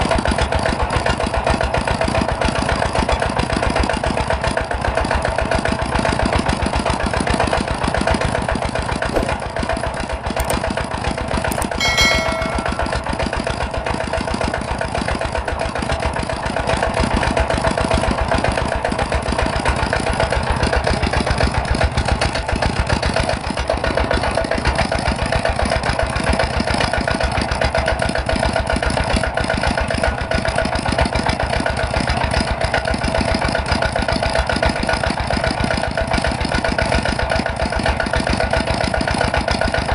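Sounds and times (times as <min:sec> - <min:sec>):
brief metallic ring: 0:11.6 - 0:13.2.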